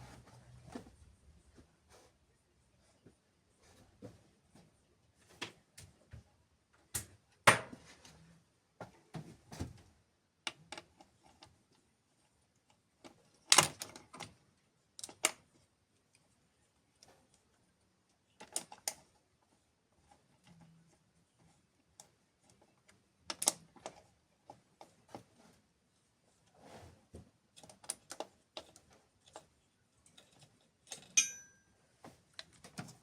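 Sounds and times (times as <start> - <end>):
tools and parts clicking and knocking: 30.0 - 31.6.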